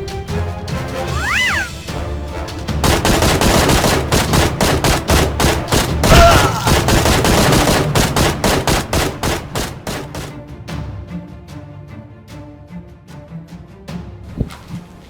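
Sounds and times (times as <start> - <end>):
rapid gunfire: 2.7 - 10.4.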